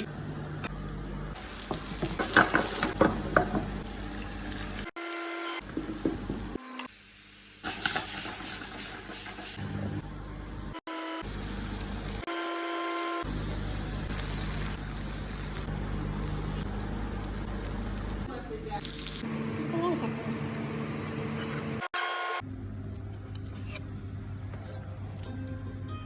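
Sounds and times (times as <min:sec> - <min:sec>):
food sizzling in a frying pan: 0:01.4 - 0:04.8, 0:05.7 - 0:09.6, 0:11.2 - 0:12.2, 0:13.2 - 0:19.2.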